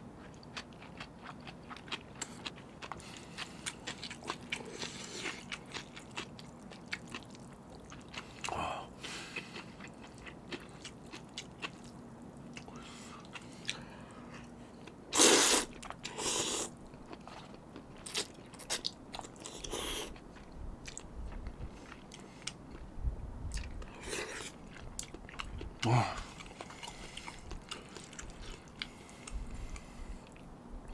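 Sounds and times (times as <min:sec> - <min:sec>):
chewing noodles: 0:00.1 - 0:22.9, 0:23.5 - 0:30.5.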